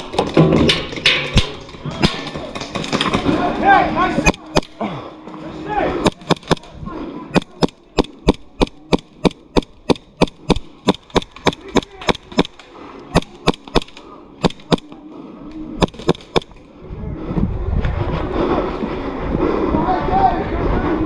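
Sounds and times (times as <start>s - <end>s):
airsoft gun firing shots: 6.0s - 6.7s, 7.3s - 14.9s, 15.8s - 16.6s.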